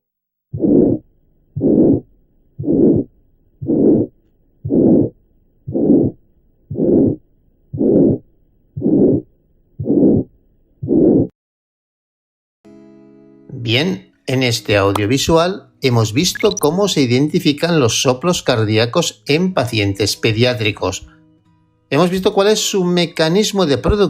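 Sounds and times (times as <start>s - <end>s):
heartbeats with systolic murmur: 0.5s - 11.3s.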